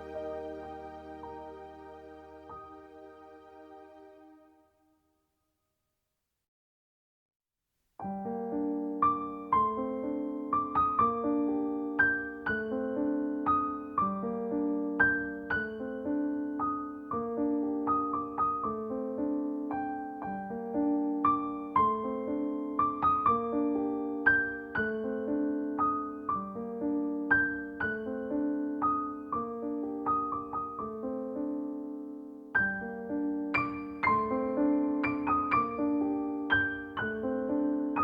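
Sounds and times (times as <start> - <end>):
gentle piano music: 0.0 - 4.7, 8.0 - 38.0.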